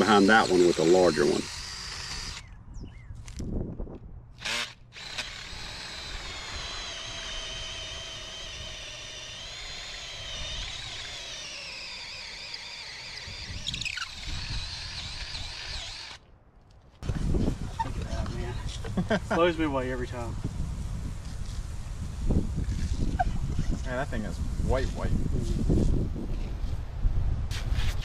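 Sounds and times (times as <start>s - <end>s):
power drill boring into stone: 0.0s - 2.5s, 4.4s - 16.2s.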